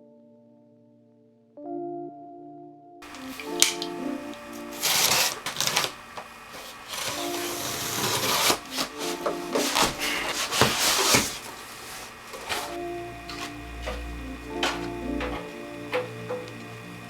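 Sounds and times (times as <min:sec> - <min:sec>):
soft background music: 0:00.0 - 0:17.0
handling rustling: 0:03.0 - 0:14.0.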